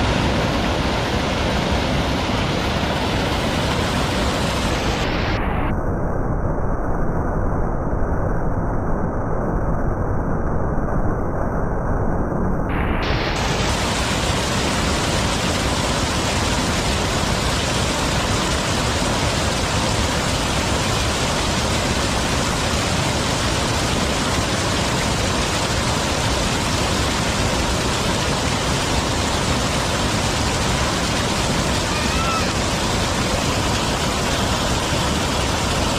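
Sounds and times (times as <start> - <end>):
stream rushing over rocks: 0.0 - 5.4, 12.8 - 35.9.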